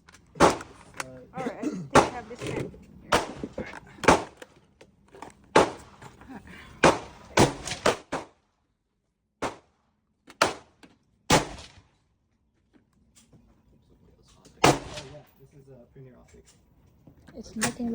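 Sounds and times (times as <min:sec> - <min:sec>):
gunshots: 0:00.4 - 0:00.9, 0:01.9 - 0:04.4, 0:05.5 - 0:06.0, 0:06.8 - 0:08.4, 0:09.4 - 0:09.7, 0:10.4 - 0:11.9, 0:14.6 - 0:15.3.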